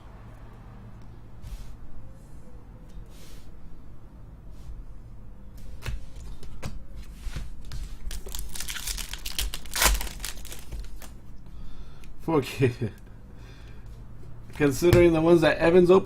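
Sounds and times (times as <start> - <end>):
card pack wrappers crinkling: 8.0 - 11.2.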